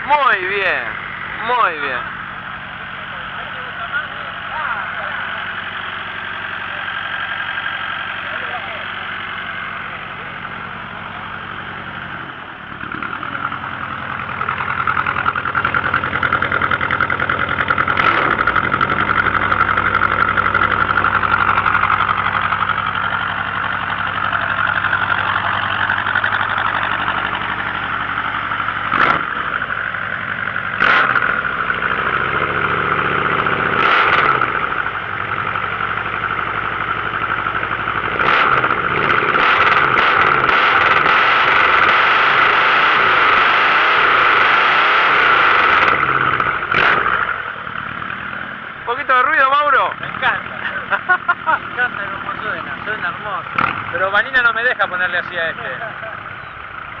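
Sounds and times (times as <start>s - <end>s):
pickup truck engines idling: 0.0s - 57.0s.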